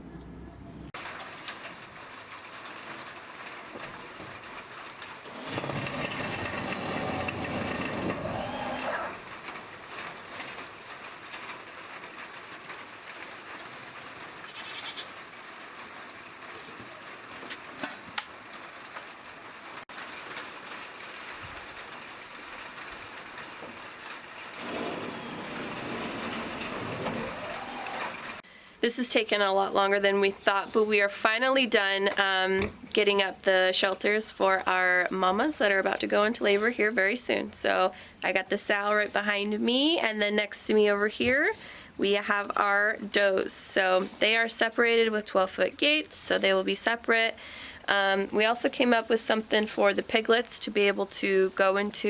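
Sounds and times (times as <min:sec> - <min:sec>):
goats bleating: 0:14.4 - 0:15.2.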